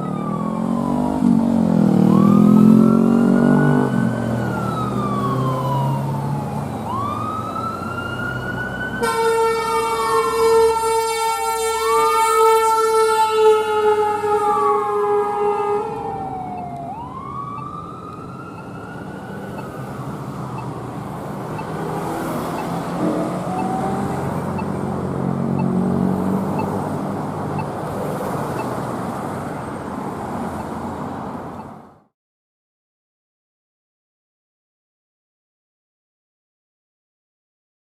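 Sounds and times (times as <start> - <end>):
siren gliding: 0.0 - 28.8
road noise: 0.0 - 32.1
truck air horn blasting: 9.0 - 16.0.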